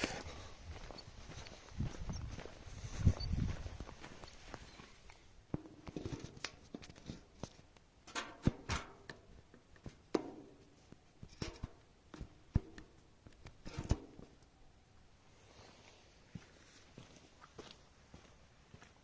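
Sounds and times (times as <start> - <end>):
rustling and scraping: 0.0 - 14.4.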